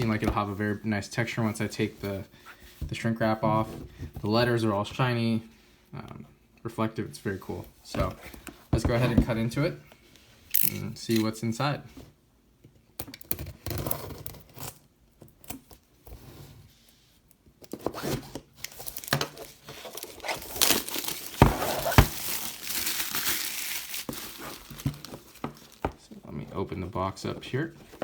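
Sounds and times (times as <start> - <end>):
plastic wrap crinkling: 18.6 - 26.2.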